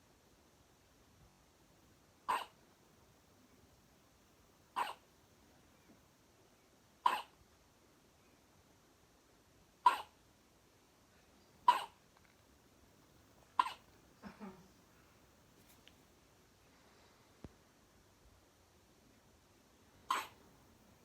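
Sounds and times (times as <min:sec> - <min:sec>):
soft low baby sound: 0:02.2 - 0:02.6, 0:07.0 - 0:07.4, 0:09.8 - 0:10.2, 0:11.0 - 0:12.4, 0:13.4 - 0:15.9, 0:20.0 - 0:20.5
baby hiccuping: 0:02.3 - 0:02.6, 0:04.8 - 0:05.0, 0:07.0 - 0:07.4, 0:09.8 - 0:10.2, 0:11.6 - 0:12.0, 0:13.6 - 0:13.9, 0:20.1 - 0:20.4.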